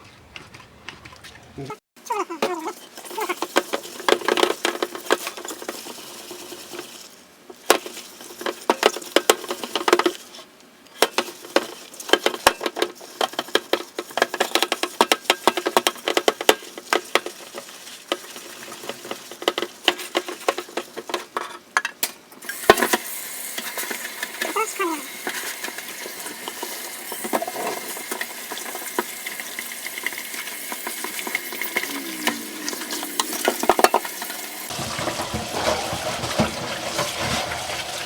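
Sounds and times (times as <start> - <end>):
scrubbing steel pot: 2.5 - 7.1, 22.5 - 38.0.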